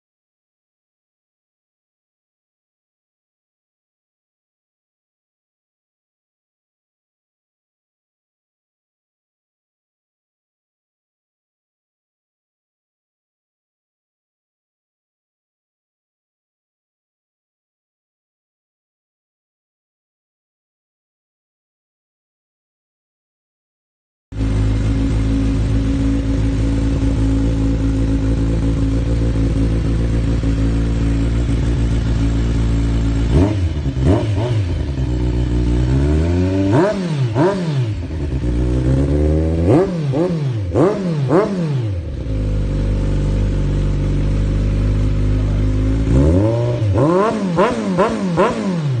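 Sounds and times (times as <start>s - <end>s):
motorcycle engine idling: 24.4s - 48.6s
motorcycle engine revving: 24.4s - 49.0s.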